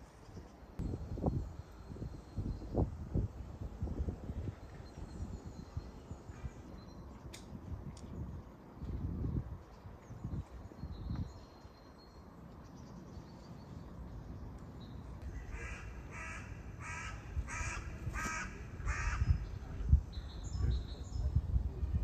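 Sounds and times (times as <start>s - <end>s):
crow cawing: 15.3s - 19.4s.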